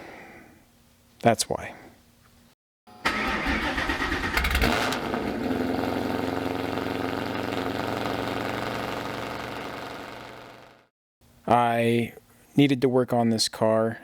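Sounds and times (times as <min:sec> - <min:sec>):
car engine starting and idling: 0:03.0 - 0:10.8.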